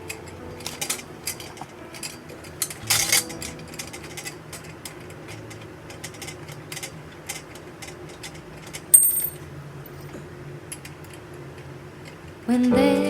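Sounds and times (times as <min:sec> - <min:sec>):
ringing metal clink: 0:09.0 - 0:09.4.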